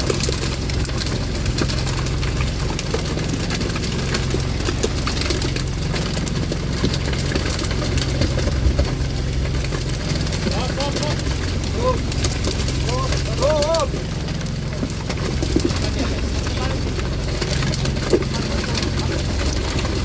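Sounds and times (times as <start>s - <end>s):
boat engine humming: 0.0s - 20.0s.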